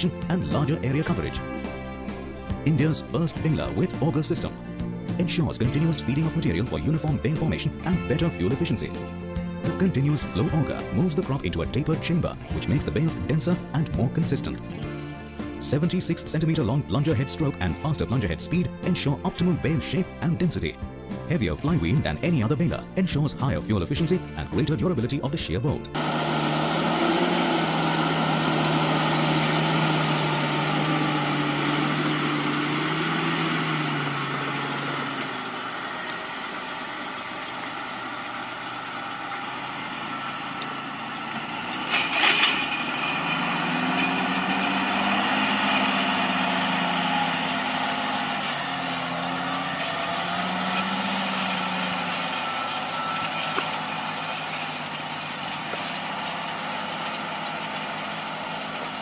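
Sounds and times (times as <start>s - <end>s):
heavy vehicle engine running: 0.0s - 59.0s.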